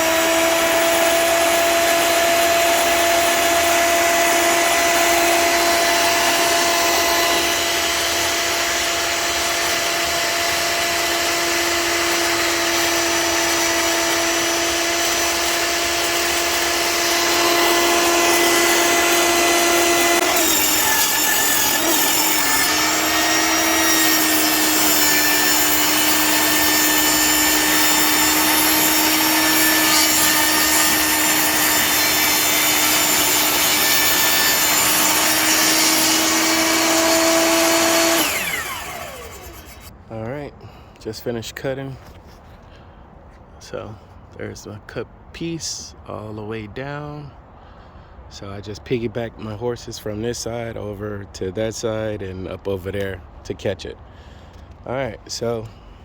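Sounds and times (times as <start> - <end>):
table saw ripping board: 0.0 - 39.9.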